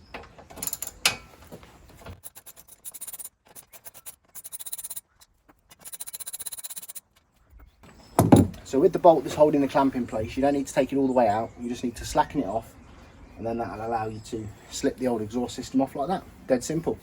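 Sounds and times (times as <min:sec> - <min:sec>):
ratchet wrench clicking: 0:00.6 - 0:01.0, 0:02.2 - 0:05.1, 0:05.7 - 0:07.0.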